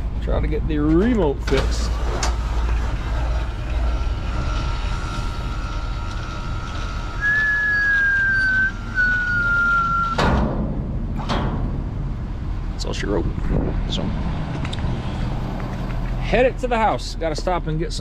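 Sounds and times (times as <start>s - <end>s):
electric motor whine: 1.9s - 10.2s
sharp knocks: 10.2s - 11.9s.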